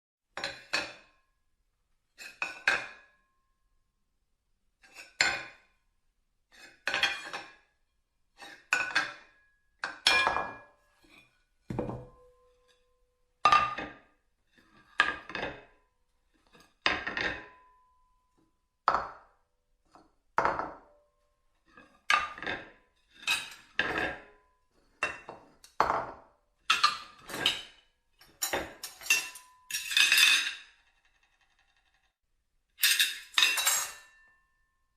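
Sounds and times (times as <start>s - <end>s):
plates clattering and clinking: 0.4s - 1.2s, 2.2s - 3.2s, 6.6s - 7.6s, 8.4s - 12.7s, 13.5s - 14.1s, 14.8s - 15.8s, 16.5s - 17.8s, 20.4s - 20.9s, 21.8s - 31.4s, 32.8s - 34.4s.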